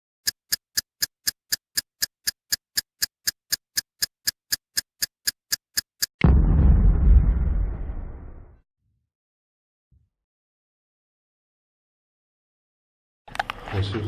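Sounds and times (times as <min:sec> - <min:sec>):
steady ticking: 0:00.2 - 0:06.2
loud explosion with deep rumble: 0:06.2 - 0:08.6.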